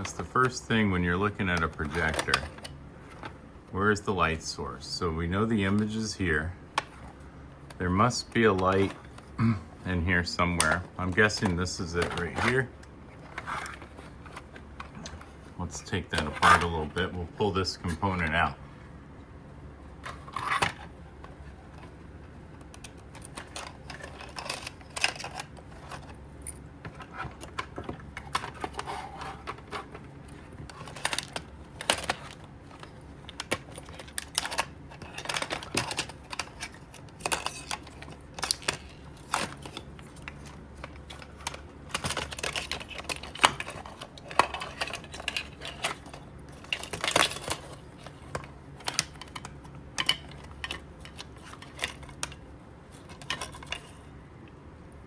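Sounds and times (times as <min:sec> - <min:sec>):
plastic parts knocking: 0:22.6 - 0:52.4
plastic toy parts clicking: 0:30.6 - 0:52.4.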